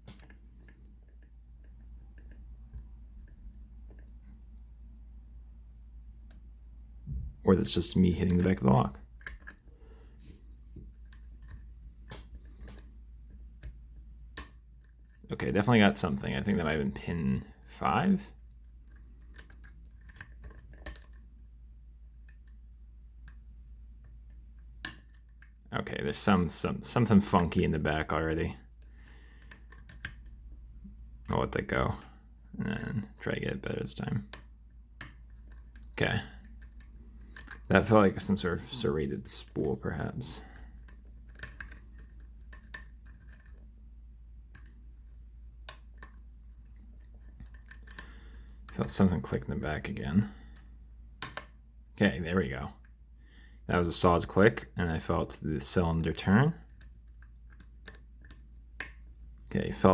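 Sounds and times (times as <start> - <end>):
lock pick metallic ticks and scrapes: 18.8 - 21.2, 28.8 - 30.4, 35.0 - 37.8, 40.4 - 43.6, 44.5 - 48.1, 56.0 - 59.0
lock pick clicking: 28.8 - 30.4, 36.4 - 37.7, 40.7 - 43.6, 45.6 - 48.8.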